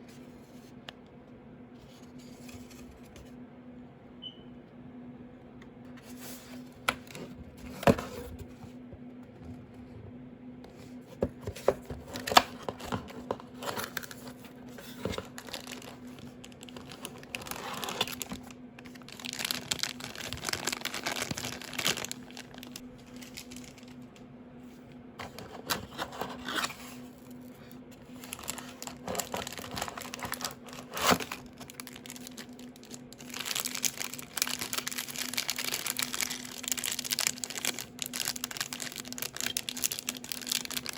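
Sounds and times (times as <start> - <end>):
steady low hum: 0.0 - 40.7
plastic and paper crinkling: 10.8 - 40.9.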